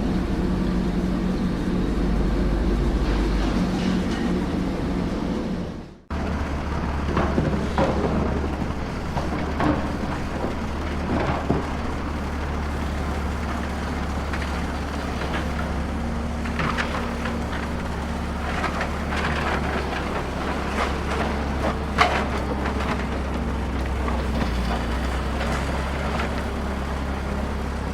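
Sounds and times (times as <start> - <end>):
heavy equipment engine rumbling: 0.0 - 27.9
clicks and clatters: 16.4 - 26.6.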